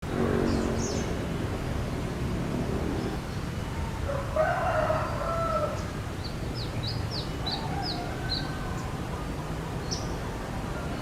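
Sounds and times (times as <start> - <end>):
rooster crowing: 3.8 - 5.9, 7.4 - 9.0.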